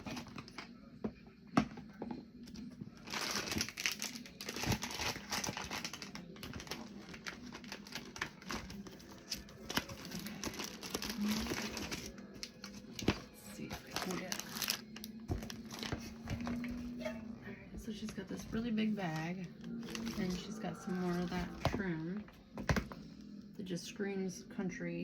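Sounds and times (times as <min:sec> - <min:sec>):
packaging crinkling and rustling: 0:02.9 - 0:16.8, 0:18.0 - 0:21.8.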